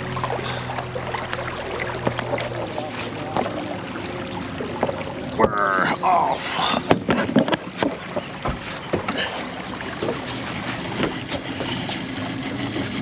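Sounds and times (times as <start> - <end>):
boat motor running: 0.0 - 13.0
knocks and clatter on board: 2.0 - 3.6, 6.8 - 9.4, 10.0 - 13.0.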